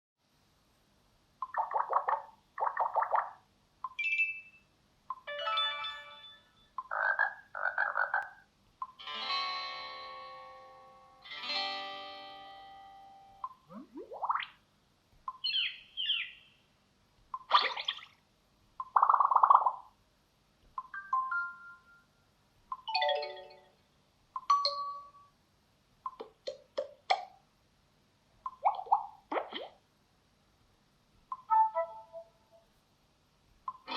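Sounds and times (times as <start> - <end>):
warbling croak-like sound effects: 1.4 - 3.4, 6.8 - 8.4, 13.4 - 14.6, 18.8 - 19.9
chime: 5.3 - 6.8, 22.9 - 23.8, 24.5 - 25.3.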